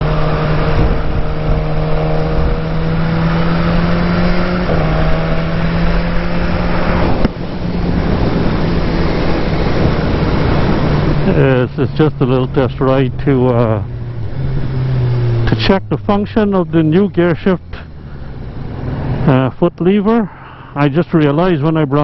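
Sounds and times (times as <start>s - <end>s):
rushing wind noise: 0.0s - 13.2s
motorcycle engine running: 0.0s - 19.5s.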